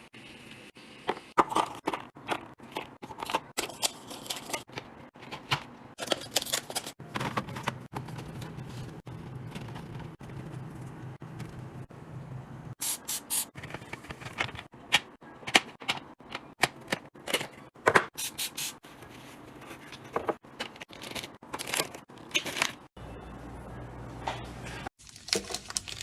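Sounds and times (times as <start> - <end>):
low steady hum: 23.0 - 24.9.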